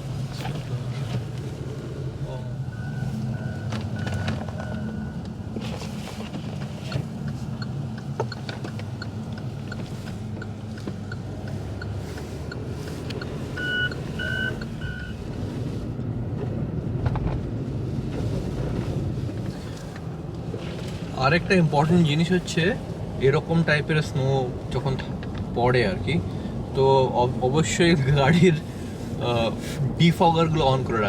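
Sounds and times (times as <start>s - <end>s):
car engine and road hum: 0.0s - 31.0s
faint regular ticking: 6.9s - 14.9s
short beeps: 13.2s - 15.1s.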